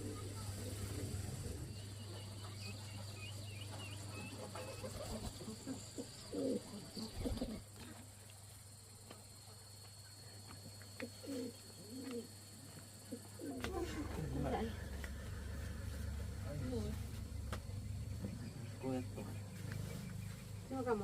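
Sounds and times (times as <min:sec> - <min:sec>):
dove cooing: 0:00.0 - 0:01.9, 0:04.1 - 0:07.8, 0:10.9 - 0:17.1
low steady hum: 0:00.0 - 0:21.0.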